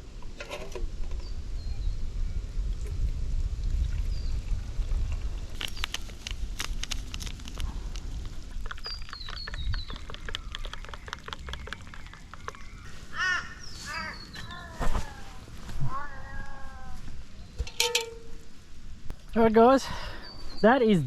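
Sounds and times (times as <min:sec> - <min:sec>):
wind on microphone: 0:01.0 - 0:12.9.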